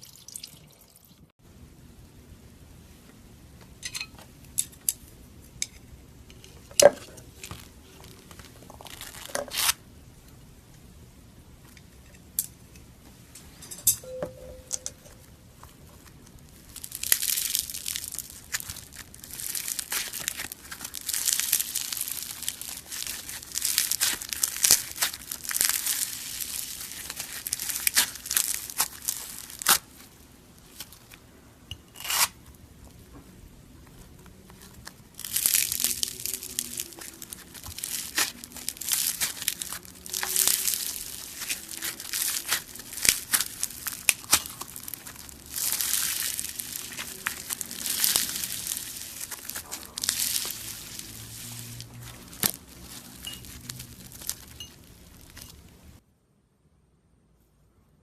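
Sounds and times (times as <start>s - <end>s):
crumbly material crackling by hand: 6.2s - 9.8s, 15.5s - 31.4s, 32.1s - 56.0s.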